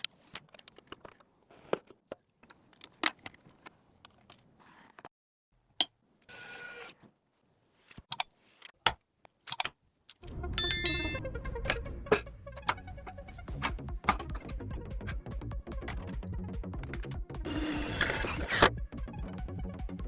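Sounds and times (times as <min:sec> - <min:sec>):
computer parts clicking and tapping: 0:08.9 - 0:11.2, 0:16.8 - 0:17.2.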